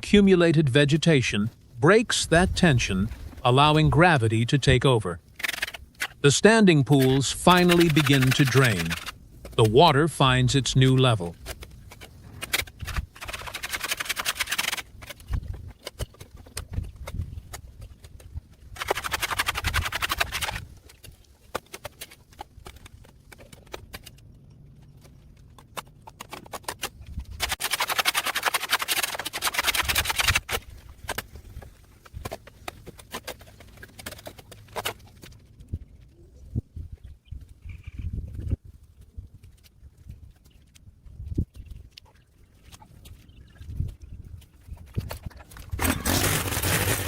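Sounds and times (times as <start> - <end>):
shovel scraping wet soil: 4.8 - 14.8, 27.4 - 31.4, 45.7 - 47.0.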